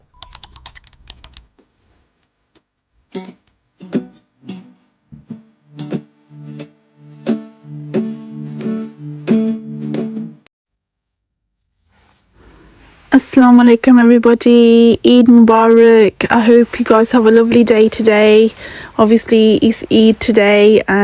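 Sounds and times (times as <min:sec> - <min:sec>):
plucked guitar notes: 0:03.1 - 0:10.4.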